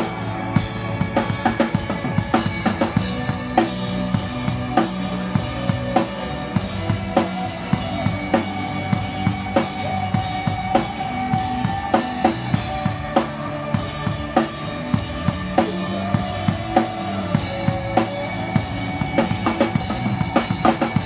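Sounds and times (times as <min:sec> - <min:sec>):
live band playing: 0:00.0 - 0:21.0.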